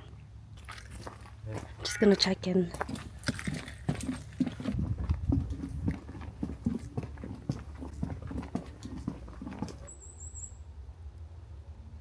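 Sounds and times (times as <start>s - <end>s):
soft footsteps: 0.6s - 10.0s.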